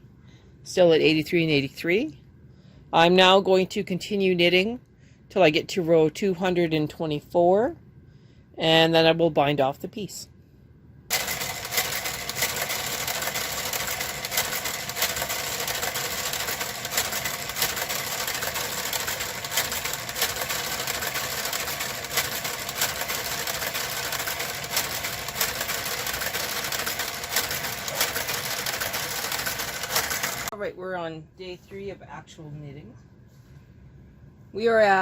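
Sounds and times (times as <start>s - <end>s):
knitting machine carriage running: 11.1s - 30.5s
sharp clicks of knitting machine: 11.1s - 30.5s.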